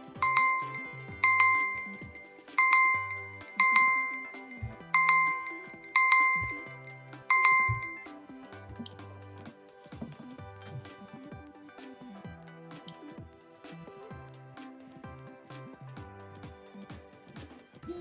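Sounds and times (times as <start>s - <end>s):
bell-like ringtone chime: 0.0s - 8.2s.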